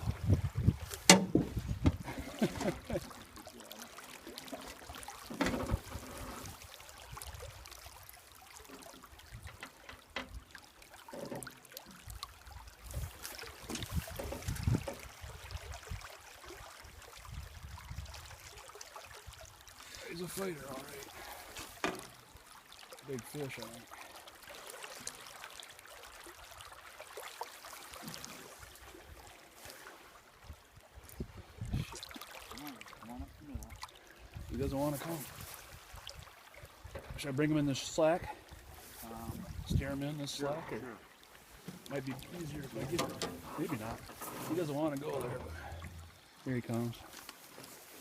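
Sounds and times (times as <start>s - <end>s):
river water trickling: 0.0s - 48.0s
low thumps: 1.0s - 2.1s
river water rushing: 40.3s - 48.0s.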